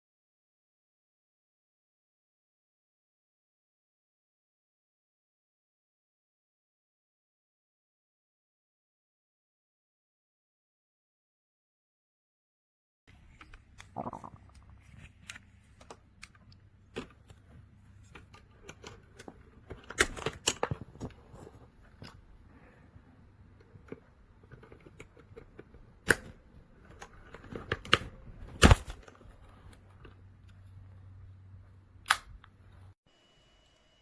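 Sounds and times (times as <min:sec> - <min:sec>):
keycaps snapping: 0:18.0 - 0:21.0.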